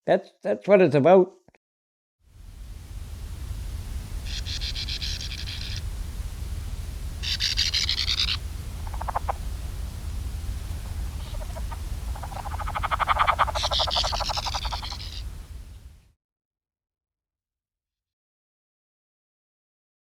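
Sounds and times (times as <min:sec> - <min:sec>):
low rumble: 0:02.4 - 0:16.0
frogs trilling: 0:02.8 - 0:15.8.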